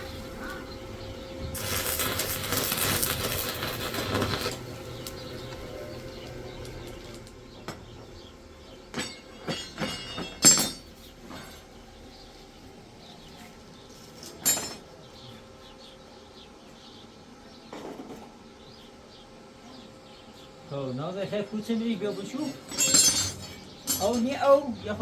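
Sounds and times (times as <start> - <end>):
hard objects knocking and clinking: 22.5 - 24.3.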